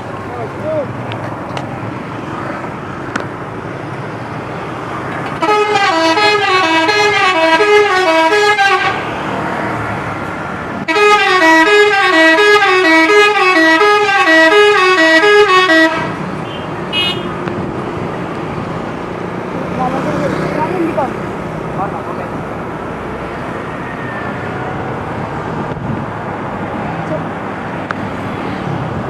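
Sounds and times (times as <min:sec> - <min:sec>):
traffic noise: 0:00.0 - 0:29.0
musical air horn: 0:05.4 - 0:09.0, 0:10.9 - 0:16.2.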